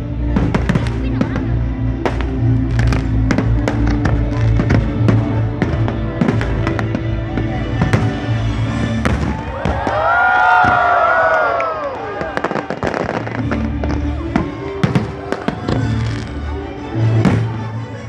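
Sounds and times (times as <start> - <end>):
music with steady bass: 0.0 - 9.5
fireworks popping and crackling: 0.3 - 11.1, 11.8 - 16.4.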